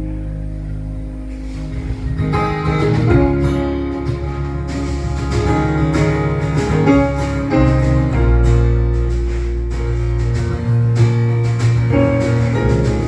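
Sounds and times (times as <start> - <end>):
acoustic guitar strumming: 0.0 - 13.0
low bass notes: 0.0 - 13.0.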